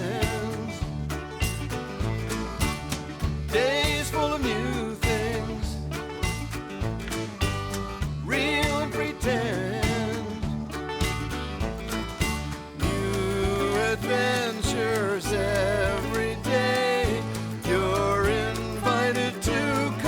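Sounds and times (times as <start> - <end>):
upbeat music with beat and bass: 0.0 - 20.0.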